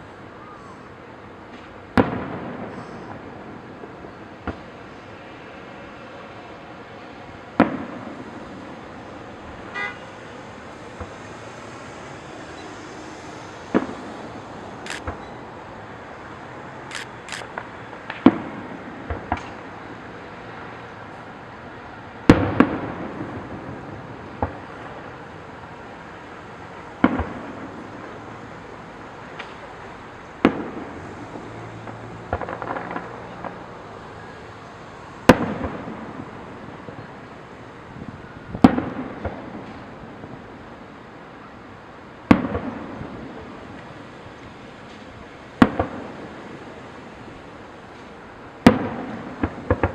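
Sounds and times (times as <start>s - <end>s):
firework crackling: 0.0s - 49.9s
firework pops: 4.4s - 4.7s, 13.7s - 14.2s, 16.9s - 19.7s, 27.0s - 27.6s, 29.3s - 29.7s, 31.8s - 33.6s, 42.3s - 43.1s, 43.7s - 46.2s, 47.9s - 49.9s.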